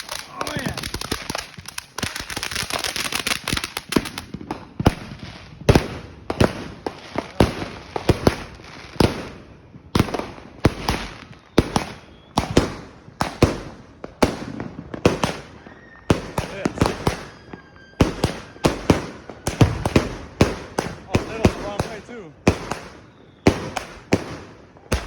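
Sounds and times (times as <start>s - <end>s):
firework cake bangs with crackle: 0.0s - 25.0s.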